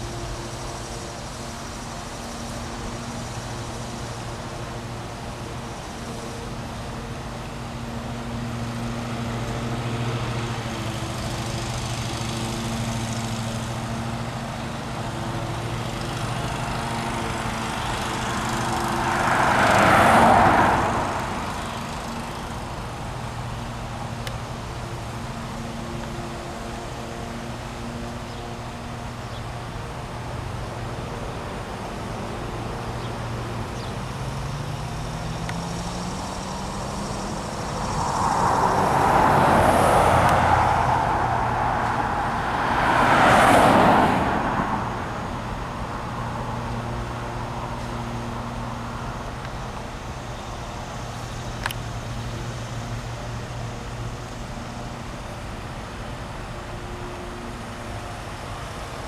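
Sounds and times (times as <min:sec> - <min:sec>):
low engine hum: 0:00.0 - 0:59.0
road vehicles passing by: 0:00.0 - 0:59.0.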